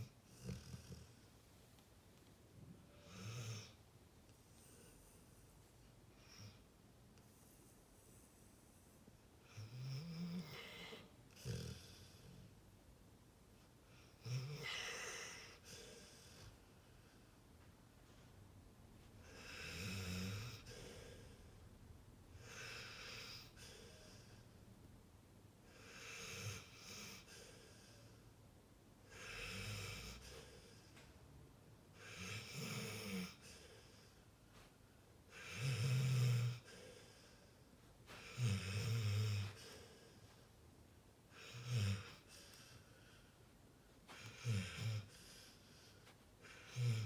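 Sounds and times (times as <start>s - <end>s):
dog snoring: 0.0s - 1.3s, 2.9s - 3.8s, 7.3s - 12.5s, 13.9s - 16.6s, 19.2s - 21.5s, 22.4s - 24.4s, 25.7s - 28.2s, 29.1s - 31.0s, 32.0s - 34.7s, 35.3s - 40.4s, 41.3s - 43.3s, 44.1s - 47.0s.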